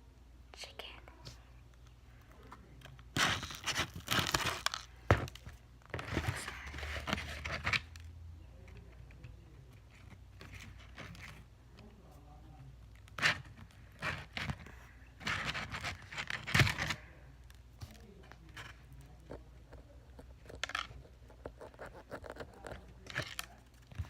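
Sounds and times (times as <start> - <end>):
crinkling and tearing: 2.8 - 8.1, 12.8 - 24.0.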